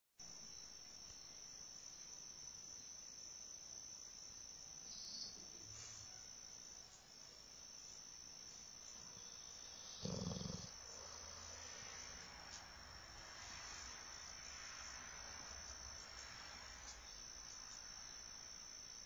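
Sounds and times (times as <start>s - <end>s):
dog snoring: 9.0s - 12.0s.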